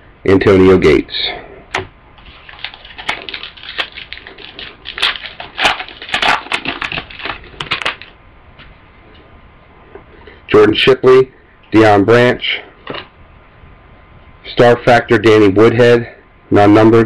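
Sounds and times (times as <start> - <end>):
foil wrapper crinkling and tearing: 2.2 - 8.2.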